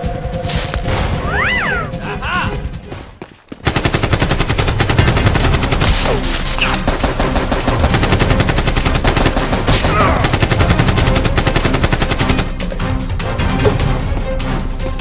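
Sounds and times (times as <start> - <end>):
rapid automatic gunfire: 3.6 - 12.6.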